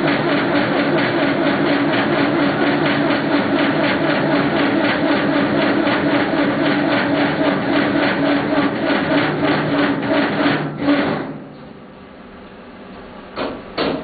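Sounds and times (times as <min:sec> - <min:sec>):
sharp knock: 0:13.4 - 0:14.0.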